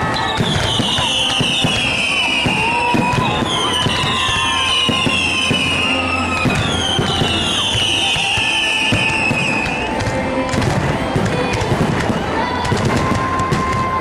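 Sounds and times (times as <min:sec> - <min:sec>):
falling firework whistles: 0:00.0 - 0:09.9
fireworks bangs and crackles: 0:00.0 - 0:14.0.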